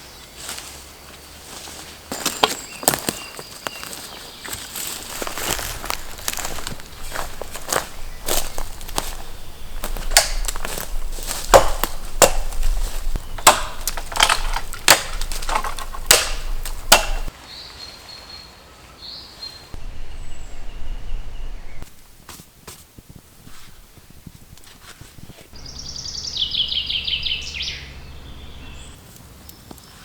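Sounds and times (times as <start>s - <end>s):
bird chirping: 2.1s - 18.5s, 19.1s - 22.0s, 25.5s - 30.0s
axe chopping wood: 5.6s - 17.3s.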